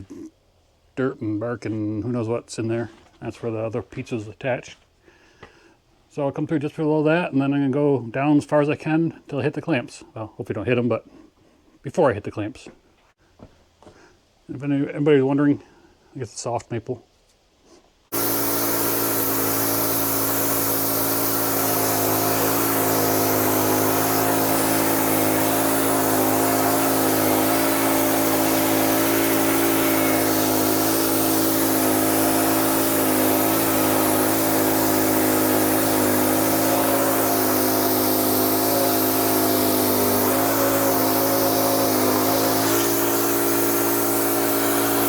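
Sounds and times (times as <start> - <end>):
band sawmill cutting log: 18.1 - 45.0.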